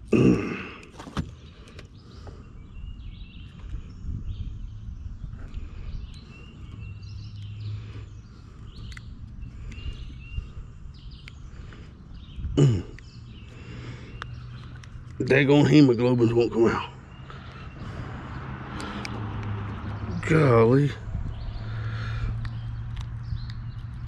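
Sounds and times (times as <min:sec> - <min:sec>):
birds chirping: 0:00.0 - 0:24.0
faint clicks: 0:08.7 - 0:10.1, 0:14.1 - 0:15.2, 0:22.3 - 0:24.0.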